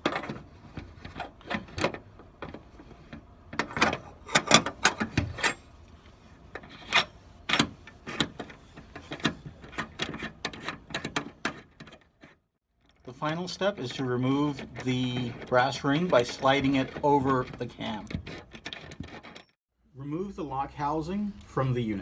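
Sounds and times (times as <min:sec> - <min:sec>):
small metallic clicks and scrapes: 0:06.5 - 0:19.6.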